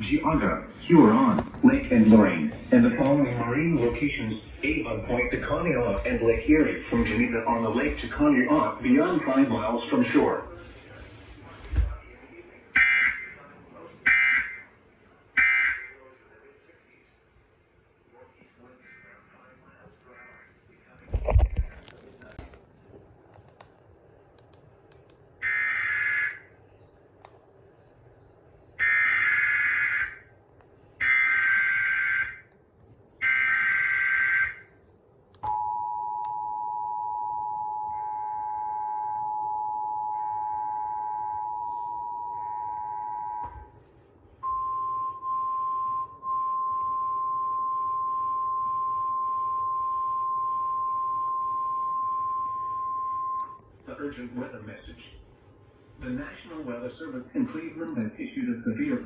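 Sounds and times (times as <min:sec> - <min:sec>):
buzzy digital data bursts: 0:00.0 - 0:12.0
steady alert tone: 0:00.0 - 0:12.0
two-tone attention signal: 0:00.0 - 0:12.0, 0:35.4 - 0:43.7, 0:44.4 - 0:53.6.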